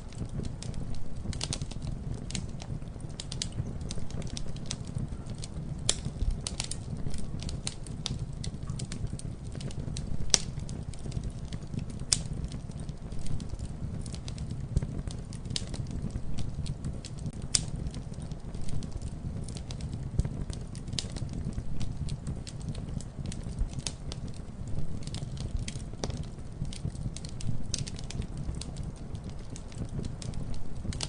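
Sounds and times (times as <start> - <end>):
campfire crackling and popping: 0.0 - 31.0.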